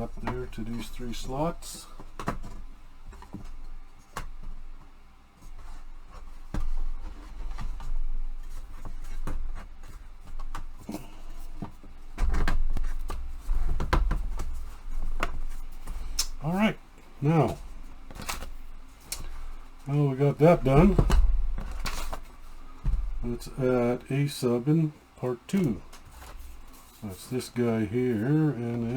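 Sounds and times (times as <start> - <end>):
low handling rumble: 19.5 - 24.9.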